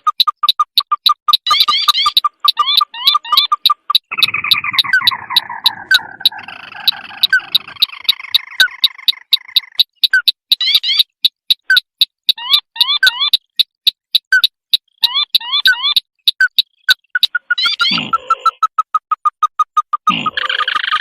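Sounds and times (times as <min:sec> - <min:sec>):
crake chattering trill: 0:00.0 - 0:21.0
crake ticking calls: 0:00.0 - 0:21.0.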